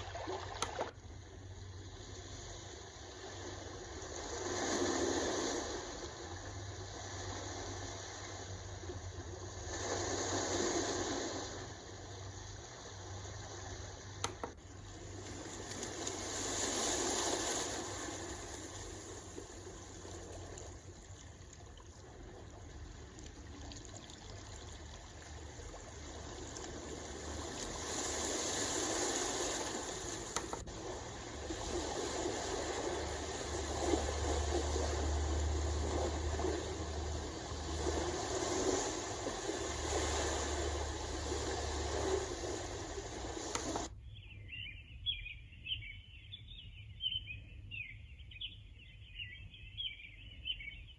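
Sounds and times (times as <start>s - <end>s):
white noise machine water rush: 0.0s - 44.0s
machine switch click: 0.6s - 0.9s, 14.2s - 14.6s, 30.3s - 30.7s, 43.5s - 43.9s.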